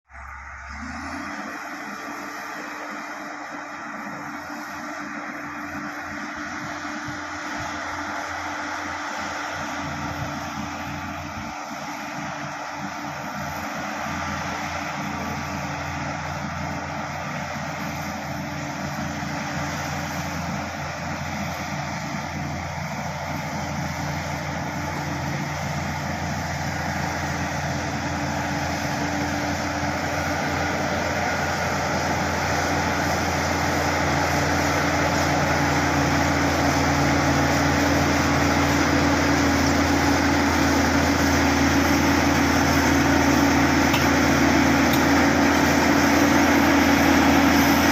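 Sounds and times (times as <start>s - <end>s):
bulldozer diesel engine running: 0.1s - 47.9s.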